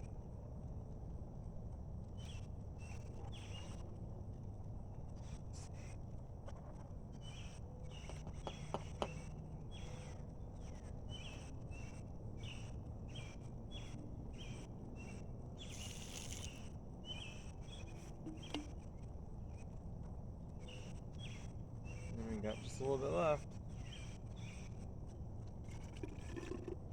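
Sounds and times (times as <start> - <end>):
insects buzzing: 15.6 - 16.6
insect chirps: 15.6 - 17.2.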